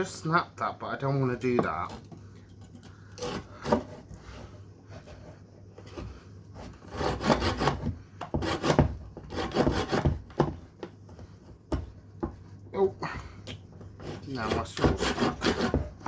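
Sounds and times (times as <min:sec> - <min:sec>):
saw cutting through log: 0:06.9 - 0:07.8, 0:08.4 - 0:10.1, 0:14.0 - 0:16.0.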